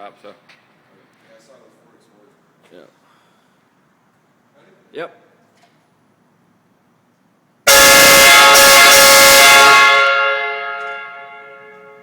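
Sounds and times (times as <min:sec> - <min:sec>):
air horn chord: 0:07.7 - 0:12.0
horn echo: 0:07.7 - 0:12.0.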